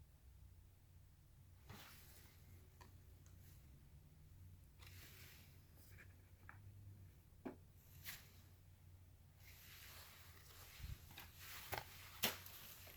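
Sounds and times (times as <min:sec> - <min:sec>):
quiet rustling of packaging: 0:01.3 - 0:12.9.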